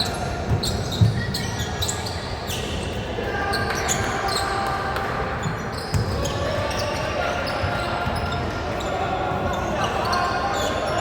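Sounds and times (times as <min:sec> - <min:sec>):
sneaker squeaks: 0:00.0 - 0:04.8, 0:05.4 - 0:11.0
voices in large hall: 0:00.0 - 0:11.0.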